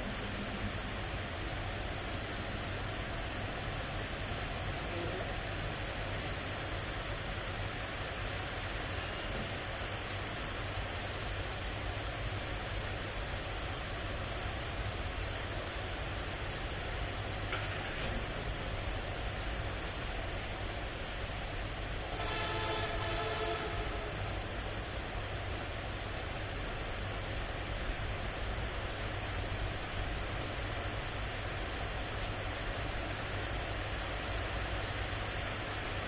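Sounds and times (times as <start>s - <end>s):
rain hissing: 0.0s - 36.0s
horn blast: 22.1s - 24.4s.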